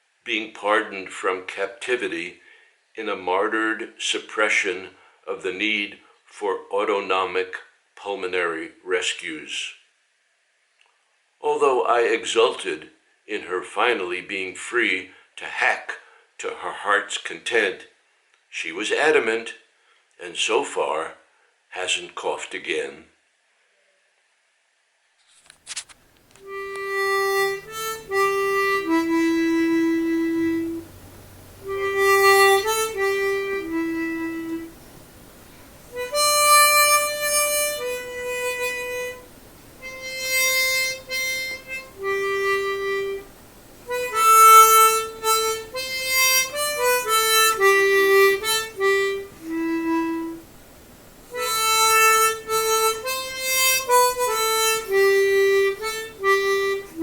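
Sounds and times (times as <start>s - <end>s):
wind instrument slow melody: 26.4s - 50.5s, 51.3s - 57.0s.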